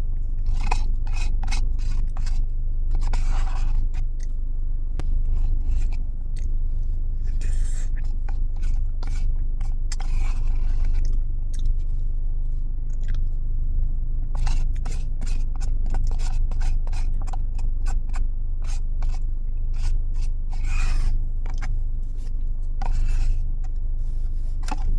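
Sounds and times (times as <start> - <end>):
steady low hum: 0.0 - 24.9
chewing: 0.2 - 4.4, 5.0 - 24.9
spoon scraping a dessert cup: 0.3 - 4.2, 5.0 - 6.5, 7.2 - 11.2, 14.3 - 24.9.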